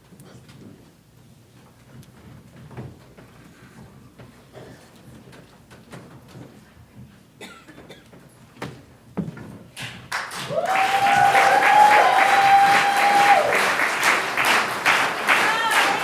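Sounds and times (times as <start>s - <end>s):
scattered knocks and shuffling: 0.0s - 9.8s
audience applause and cheering: 10.1s - 16.0s
high held cheer: 10.1s - 16.0s.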